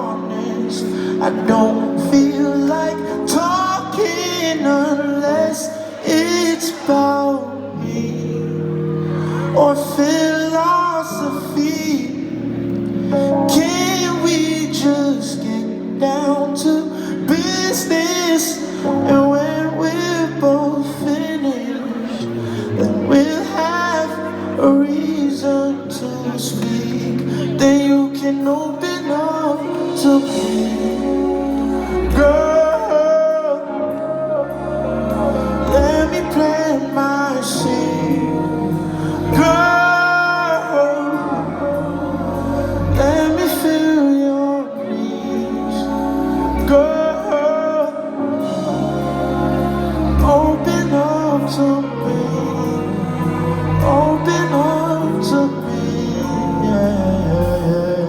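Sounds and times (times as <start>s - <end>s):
person singing: 0.0s - 58.0s
deep bass notes and chords: 26.3s - 58.0s.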